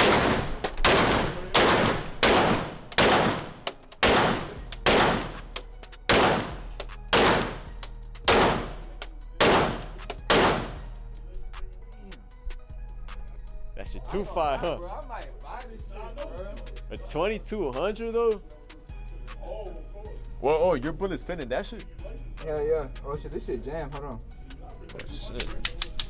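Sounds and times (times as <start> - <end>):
pistol shots with ringing echo: 0.0 - 10.9.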